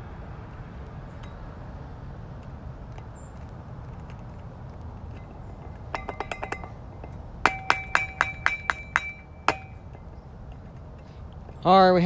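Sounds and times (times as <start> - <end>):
glassy metallic clinks: 5.2 - 10.1.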